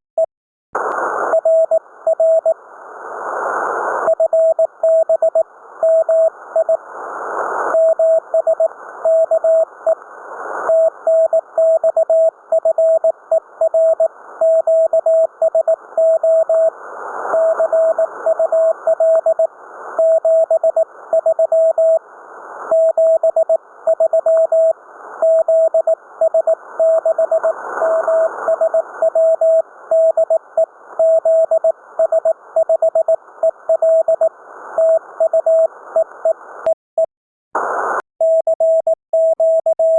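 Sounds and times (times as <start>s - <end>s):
radio static hiss: 0.8s - 4.8s, 5.4s - 11.6s, 13.2s - 36.7s, 37.6s - 38.0s.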